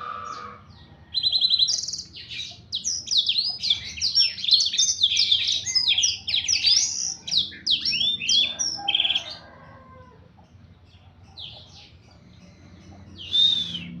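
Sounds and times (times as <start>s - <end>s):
loud bird call: 0.0s - 9.6s, 12.8s - 14.0s
bird twittering song: 0.0s - 14.0s.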